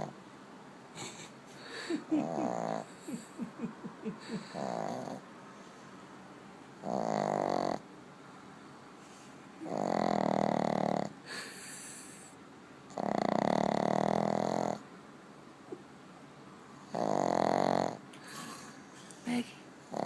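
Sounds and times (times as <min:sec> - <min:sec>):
dog snoring: 0:02.0 - 0:03.2, 0:04.2 - 0:05.2, 0:06.8 - 0:07.8, 0:09.6 - 0:11.2, 0:12.9 - 0:14.8, 0:16.8 - 0:18.8.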